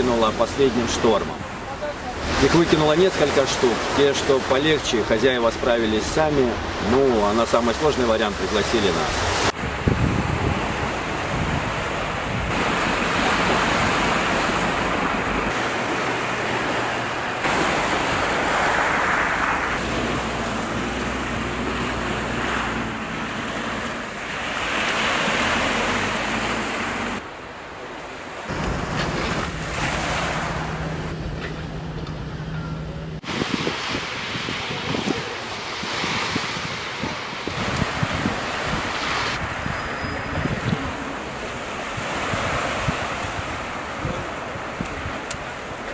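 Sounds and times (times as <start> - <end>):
sea surf washing on beach: 0.0 - 32.0, 33.2 - 45.9
wind buffeting microphone: 9.0 - 27.2, 28.5 - 45.8.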